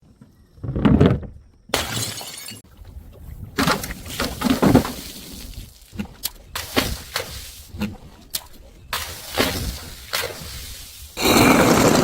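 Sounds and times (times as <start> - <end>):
glass bottles smashing: 1.8 - 2.6.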